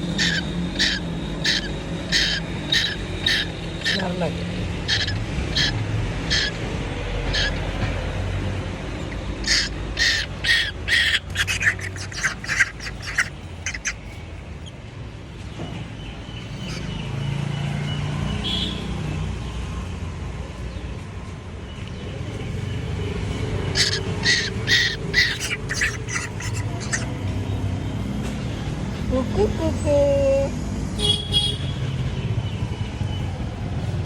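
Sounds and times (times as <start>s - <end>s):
chick calling: 0.0s - 4.2s, 4.8s - 6.7s, 7.3s - 8.0s, 9.1s - 14.7s, 23.7s - 27.3s.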